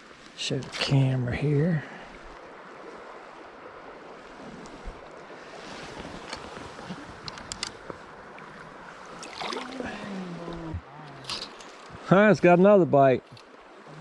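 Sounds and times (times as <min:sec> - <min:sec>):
stream water running: 0:00.0 - 0:14.0.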